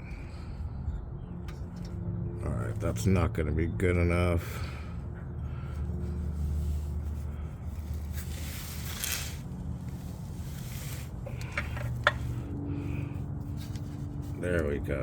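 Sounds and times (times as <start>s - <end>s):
steady low hum: 0.0s - 15.0s
wrench rustling scrape: 6.2s - 12.5s, 13.4s - 14.4s.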